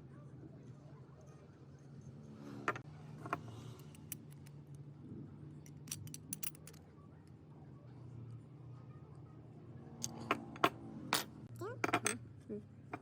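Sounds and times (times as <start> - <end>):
small metal parts clinking: 3.6 - 4.6, 5.7 - 6.8.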